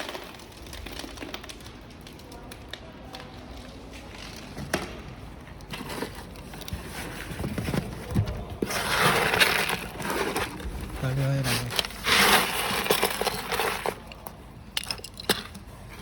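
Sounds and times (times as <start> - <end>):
coffee beans pouring: 8.7 - 15.5
coffee beans clattering: 8.7 - 16.0.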